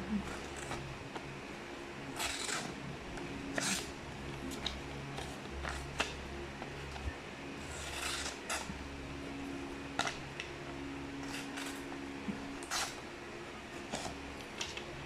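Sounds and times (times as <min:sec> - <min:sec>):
steady low hum: 0:00.0 - 0:15.0
knife blade cutting paper: 0:02.2 - 0:02.8, 0:03.6 - 0:03.9, 0:07.7 - 0:08.7, 0:12.6 - 0:13.0.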